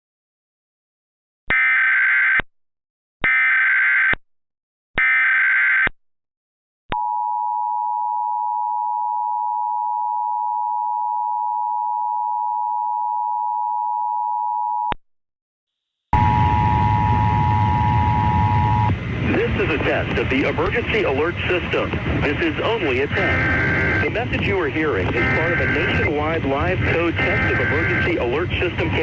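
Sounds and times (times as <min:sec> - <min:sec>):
two-tone attention signal: 0:16.2 - 0:18.9, 0:23.1 - 0:24.2, 0:25.1 - 0:29.0.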